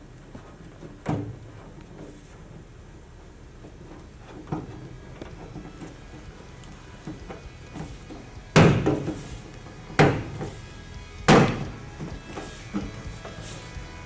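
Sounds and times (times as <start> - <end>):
hard thumps on truck door: 7.0 - 13.0.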